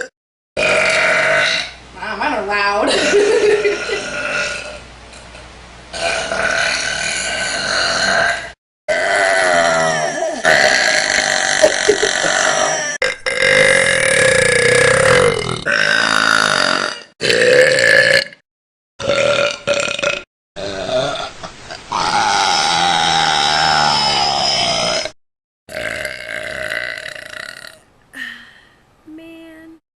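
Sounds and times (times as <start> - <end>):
girls burping: 9.4 - 16.8.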